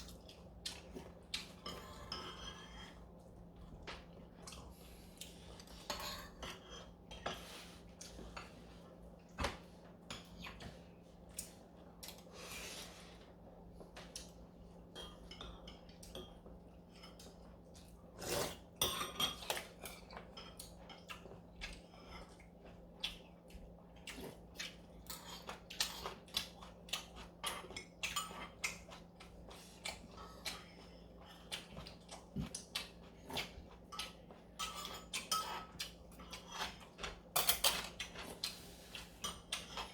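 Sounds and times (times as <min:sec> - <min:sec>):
utensils clinking against bowls: 0:18.3 - 0:21.1, 0:33.8 - 0:38.3.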